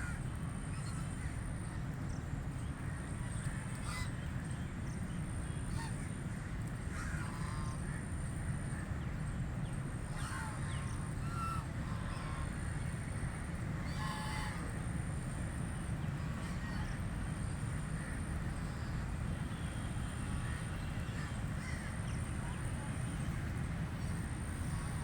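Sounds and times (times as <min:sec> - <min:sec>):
ducks quacking: 0:24.5 - 0:25.0.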